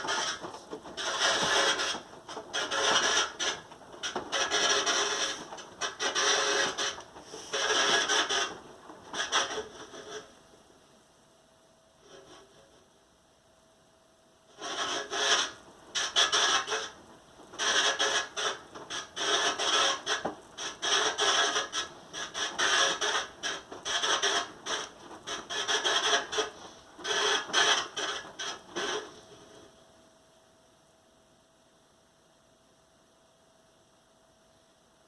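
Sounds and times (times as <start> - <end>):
device rasping and scraping: 0.0 - 10.3, 14.6 - 17.0, 17.6 - 29.7.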